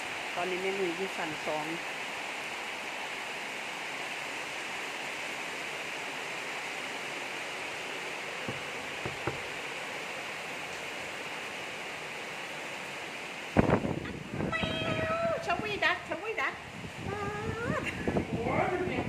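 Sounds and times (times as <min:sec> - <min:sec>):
heavy rain falling: 0:00.0 - 0:19.0
faint knocks: 0:08.5 - 0:09.6.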